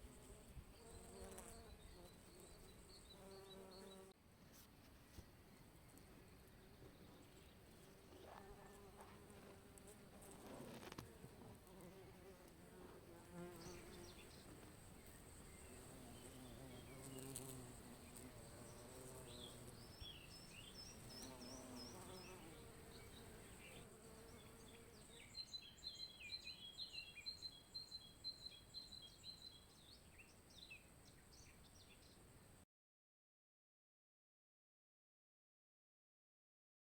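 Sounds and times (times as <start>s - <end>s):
small birds chirping: 0.0s - 4.2s, 13.3s - 32.3s.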